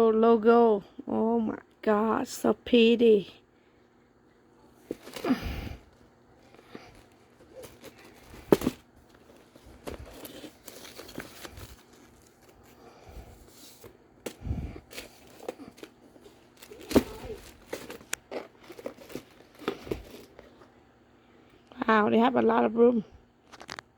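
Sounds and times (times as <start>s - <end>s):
paper crinkling and rustling: 6.4s - 20.8s.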